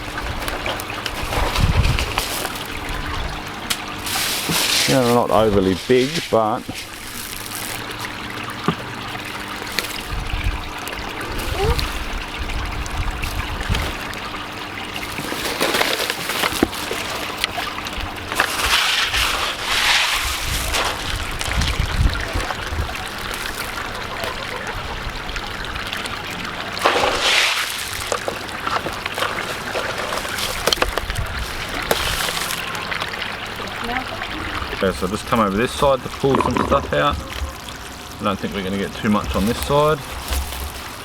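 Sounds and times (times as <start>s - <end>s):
water trickling and sloshing: 0.0s - 41.0s
hands digging in wet media: 3.7s - 8.3s, 15.1s - 24.0s, 26.8s - 32.8s.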